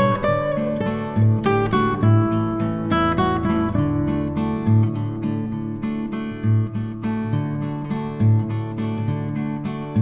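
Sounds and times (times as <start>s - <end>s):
acoustic guitar strumming: 0.0s - 10.0s.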